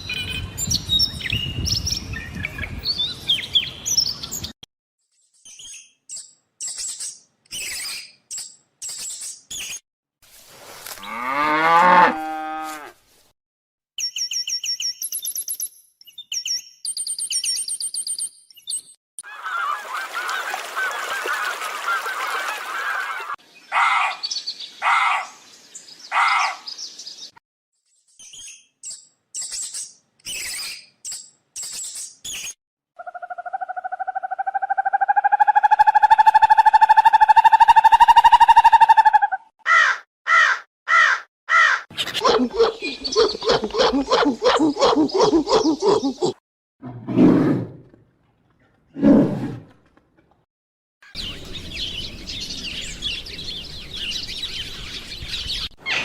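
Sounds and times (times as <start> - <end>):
high bird chirps: 14.0 - 18.9.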